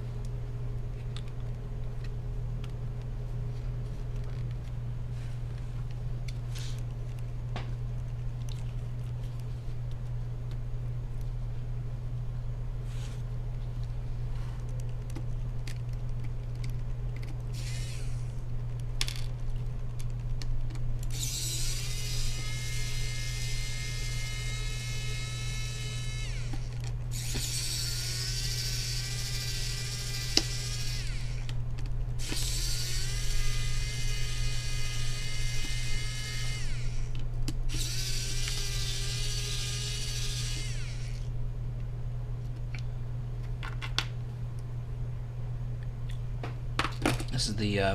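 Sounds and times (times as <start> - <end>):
steady low hum: 0.0 - 47.9
electric screwdriver whining: 17.6 - 18.2, 21.1 - 31.5, 32.2 - 37.1, 37.7 - 41.3.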